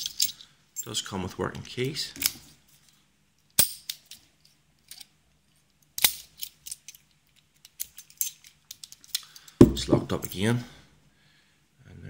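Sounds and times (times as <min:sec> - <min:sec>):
padlock shackle snapping: 0:05.9 - 0:09.9.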